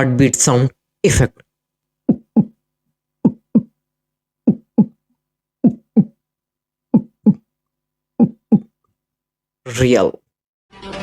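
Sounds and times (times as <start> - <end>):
heartbeat thumps: 2.1 - 2.6, 3.2 - 3.7, 4.5 - 5.0.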